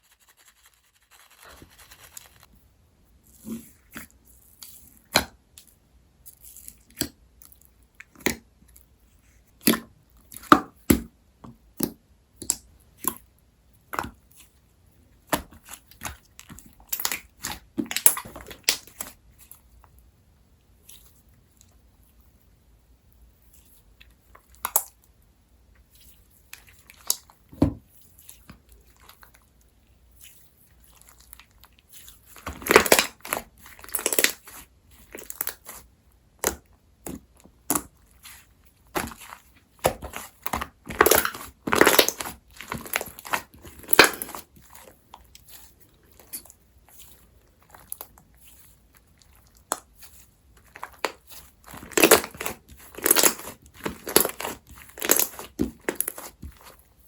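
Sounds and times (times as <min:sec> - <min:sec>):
slime squished by hand: 0:30.1 - 0:57.0.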